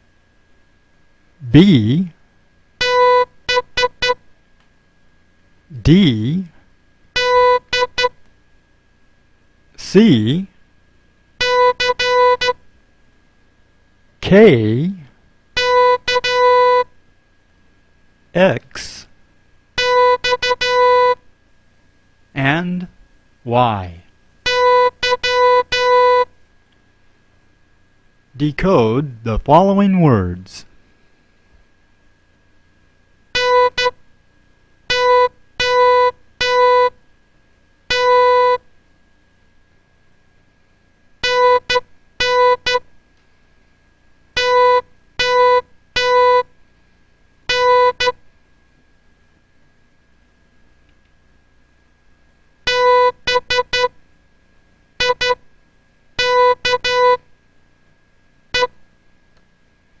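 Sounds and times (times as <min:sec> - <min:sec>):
morse code beeps: 0:02.8 - 0:04.2, 0:07.2 - 0:08.2, 0:11.4 - 0:12.6, 0:15.6 - 0:16.9, 0:19.8 - 0:21.2, 0:24.5 - 0:26.3, 0:33.4 - 0:34.0, 0:34.9 - 0:36.9, 0:37.9 - 0:38.6, 0:41.2 - 0:42.8, 0:44.4 - 0:46.5, 0:47.5 - 0:48.2, 0:52.7 - 0:53.9, 0:55.0 - 0:55.4, 0:56.2 - 0:57.2.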